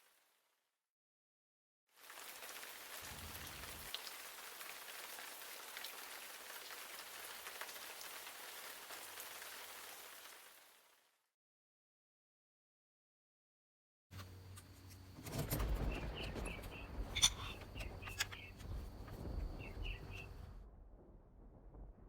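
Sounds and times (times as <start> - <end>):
rain pattering on a surface: 1.9 - 11.2, 15.8 - 20.5.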